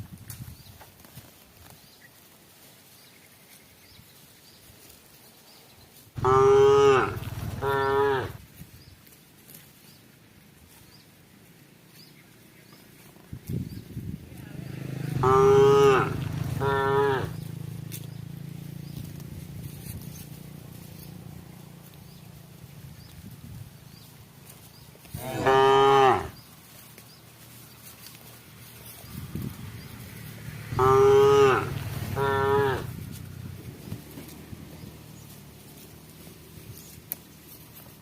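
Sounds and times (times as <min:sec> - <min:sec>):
cow mooing: 0:06.2 - 0:08.4, 0:14.4 - 0:17.5, 0:25.1 - 0:26.4, 0:30.4 - 0:33.0.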